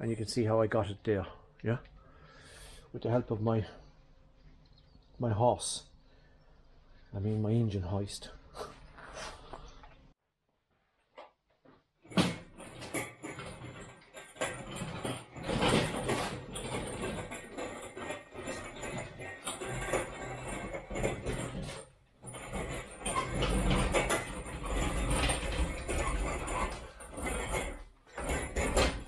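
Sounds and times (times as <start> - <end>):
metal parts clanking and scraping: 12.1 - 29.0.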